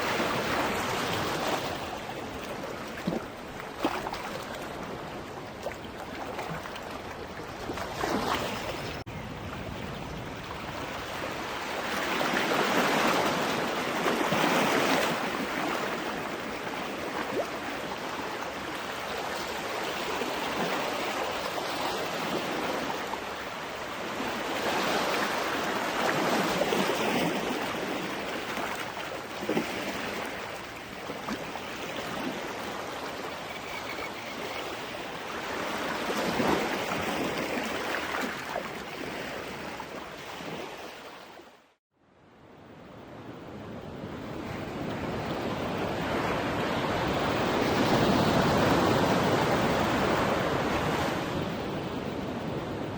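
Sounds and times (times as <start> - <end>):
waves breaking: 0.0 - 41.5.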